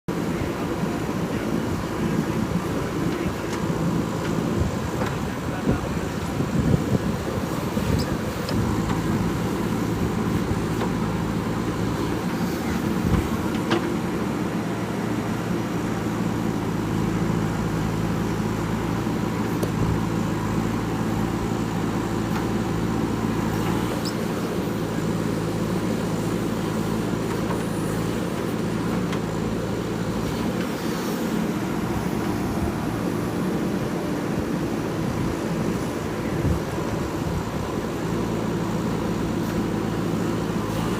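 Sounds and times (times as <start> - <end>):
diesel engine running: 0.0 - 40.9.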